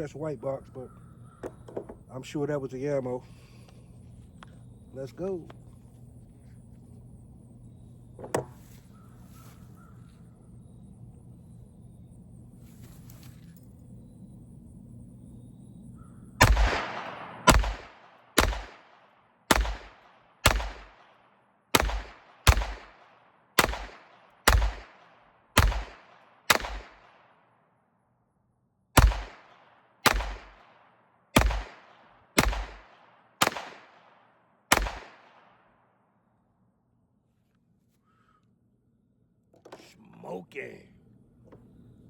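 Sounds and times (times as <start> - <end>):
pistol shots echoing: 16.4 - 27.3, 29.0 - 35.6.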